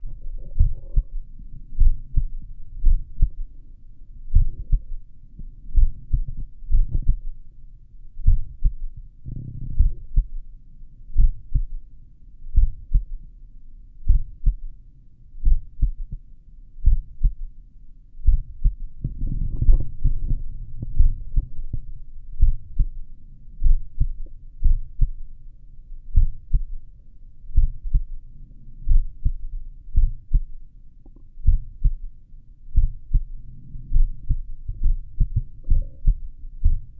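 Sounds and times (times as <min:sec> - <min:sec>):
heartbeat through stethoscope: 0:00.0 - 0:03.6, 0:04.3 - 0:07.5, 0:08.2 - 0:10.5, 0:11.1 - 0:11.9, 0:12.5 - 0:13.2, 0:14.0 - 0:14.7, 0:15.4 - 0:17.5, 0:18.2 - 0:25.3, 0:26.1 - 0:26.8, 0:27.5 - 0:28.2, 0:28.8 - 0:30.6, 0:31.4 - 0:32.1, 0:32.7 - 0:36.9
low rumbling noise: 0:00.0 - 0:13.3, 0:18.2 - 0:36.9.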